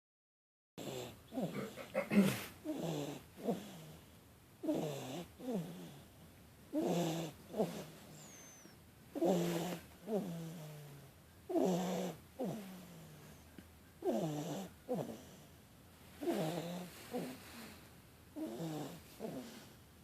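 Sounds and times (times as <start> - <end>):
person snoring: 14.0 - 15.4, 16.2 - 17.7, 18.4 - 19.7.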